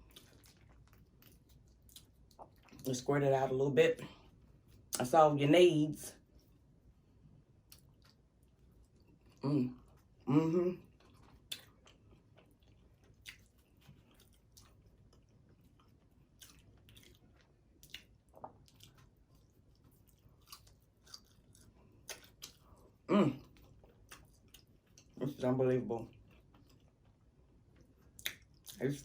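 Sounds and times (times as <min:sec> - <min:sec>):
mouth clicks and smacks chewing: 0:00.0 - 0:02.9, 0:10.9 - 0:22.8, 0:26.1 - 0:28.9
short vocal sound: 0:09.4 - 0:10.8, 0:23.1 - 0:23.4.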